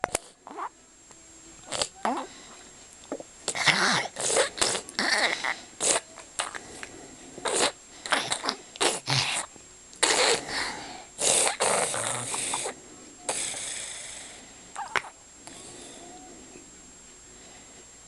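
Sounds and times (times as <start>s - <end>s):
child snoring congested: 1.6s - 2.6s, 3.5s - 16.5s.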